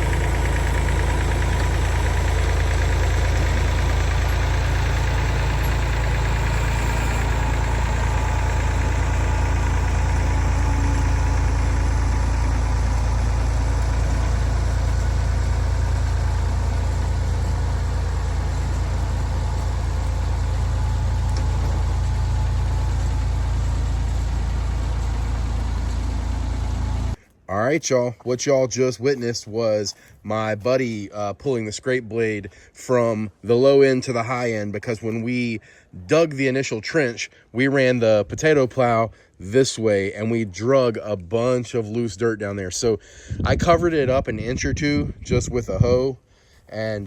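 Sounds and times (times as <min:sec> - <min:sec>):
tractor engine running: 0:00.0 - 0:27.2, 0:42.7 - 0:45.9.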